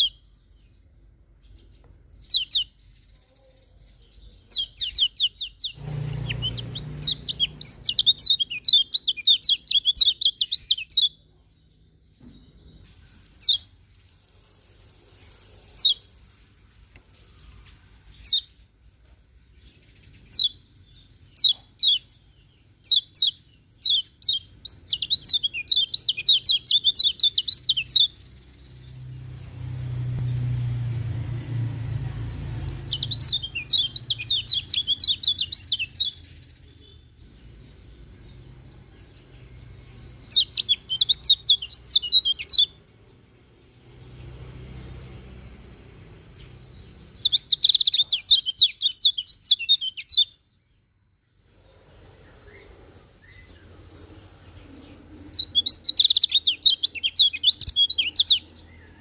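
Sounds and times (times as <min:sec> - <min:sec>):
sharp bird chirps: 0:00.0 - 0:13.8, 0:19.6 - 0:29.3, 0:32.5 - 0:42.9, 0:46.4 - 0:50.6, 0:54.9 - 0:59.0
bird twittering warbles: 0:04.2 - 0:11.2, 0:32.6 - 0:38.3, 0:46.6 - 0:50.3, 0:54.6 - 0:59.0
low rumble: 0:28.7 - 0:34.7.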